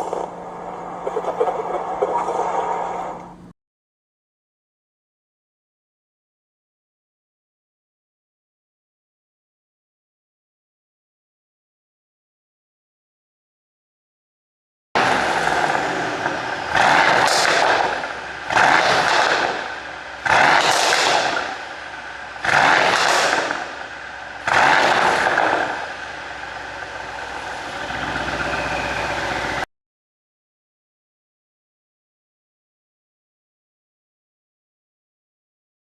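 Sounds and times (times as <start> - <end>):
exhaust popping and crackling: 15.0 - 29.6
car engine revving: 15.0 - 29.7.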